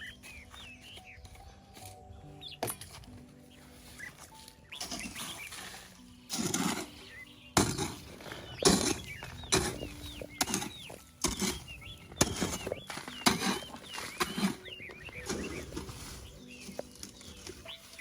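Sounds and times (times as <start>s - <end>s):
birds chirping: 0.0s - 18.0s.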